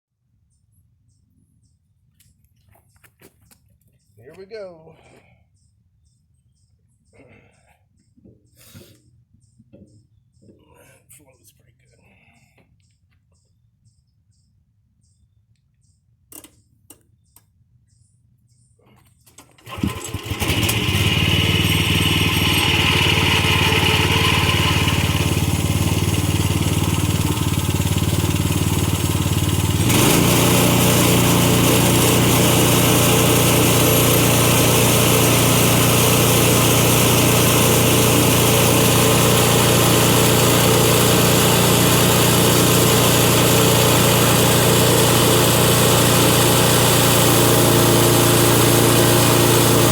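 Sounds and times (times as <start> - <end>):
sawmill gasoline engine running: 19.6 - 49.9.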